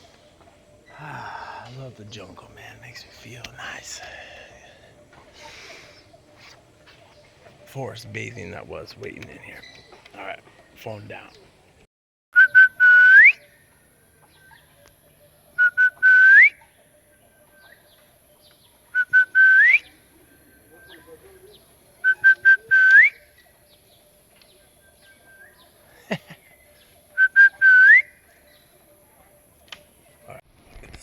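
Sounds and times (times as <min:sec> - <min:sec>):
bird whistling call: 0:12.4 - 0:13.6, 0:15.6 - 0:16.7, 0:18.9 - 0:23.9, 0:24.5 - 0:25.8, 0:26.7 - 0:28.6.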